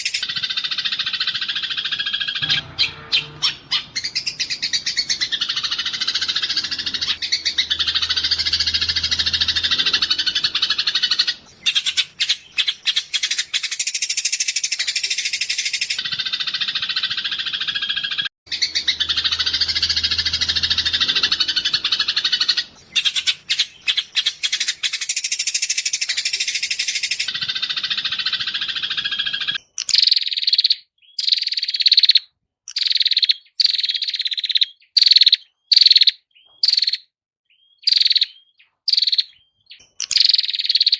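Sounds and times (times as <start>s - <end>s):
short birdsong phrases: 14.8s - 40.9s.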